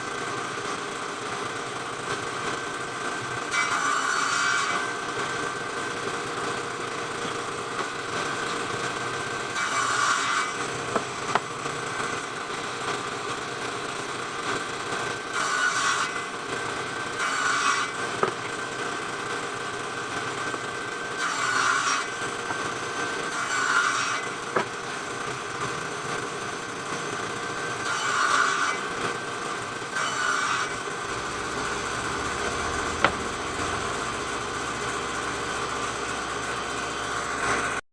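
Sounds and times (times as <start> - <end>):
circular saw cutting wood: 0.2 - 12.8, 15.1 - 37.8
sharp knocks: 31.3 - 33.7.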